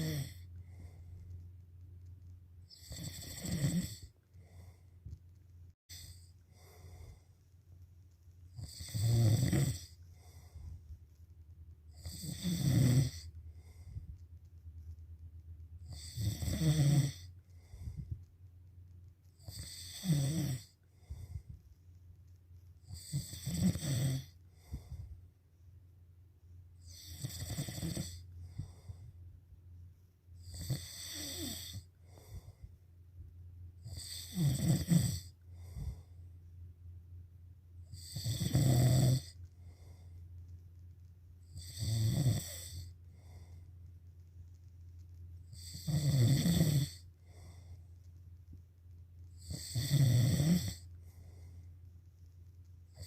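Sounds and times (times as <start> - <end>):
person snoring: 0.0 - 0.8, 2.7 - 4.8, 8.6 - 10.6, 12.0 - 13.8, 15.9 - 17.7, 19.4 - 21.4, 22.9 - 24.9, 26.8 - 28.9, 30.4 - 32.4, 33.8 - 36.0, 37.9 - 39.4, 41.5 - 42.9, 45.5 - 47.7, 49.4 - 50.9
steady low hum: 0.0 - 53.0.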